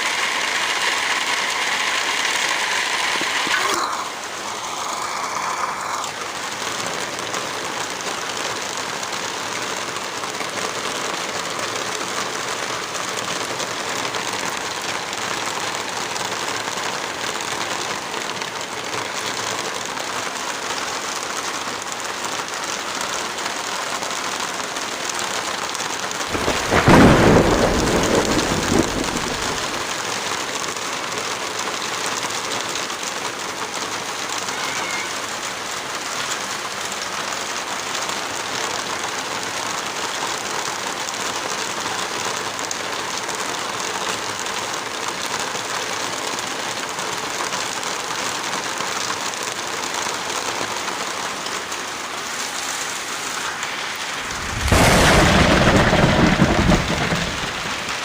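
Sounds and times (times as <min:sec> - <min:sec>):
steady rain: 0:00.0 - 0:58.0
thunder rumbling: 0:26.3 - 0:29.9, 0:53.6 - 0:58.0.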